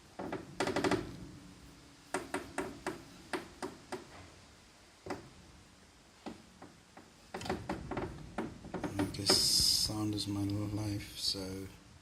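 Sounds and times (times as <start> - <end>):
piano pedals cracking: 6.3 - 10.2.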